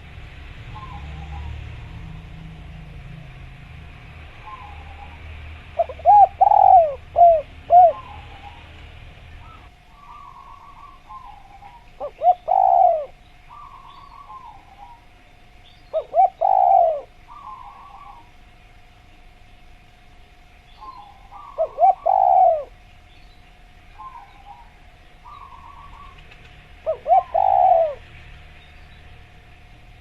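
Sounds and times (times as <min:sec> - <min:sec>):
small birds chirping: 0:00.6 - 0:01.9, 0:04.4 - 0:30.0
dove cooing: 0:00.7 - 0:01.8, 0:04.4 - 0:15.2, 0:15.9 - 0:18.4, 0:20.8 - 0:22.8, 0:23.9 - 0:28.1.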